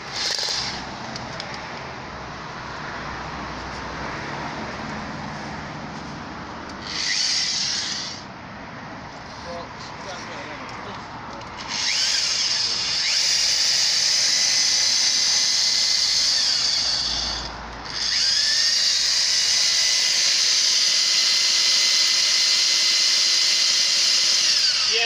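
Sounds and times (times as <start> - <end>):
power drill boring into concrete: 0.0 - 0.8, 6.8 - 8.2, 11.6 - 25.0.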